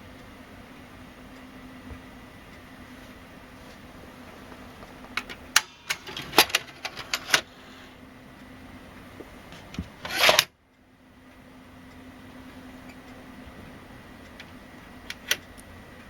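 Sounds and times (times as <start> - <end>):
low steady hum: 0.0 - 16.0
video deck mechanism clicks and clunks: 4.5 - 7.8, 9.2 - 10.5, 14.2 - 15.7.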